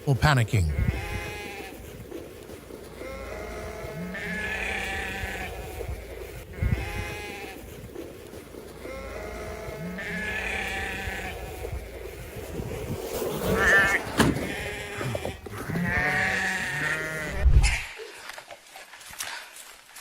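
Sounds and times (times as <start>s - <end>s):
animals bleating: 0.6s - 1.9s, 2.8s - 7.8s, 8.7s - 12.2s, 13.6s - 17.4s.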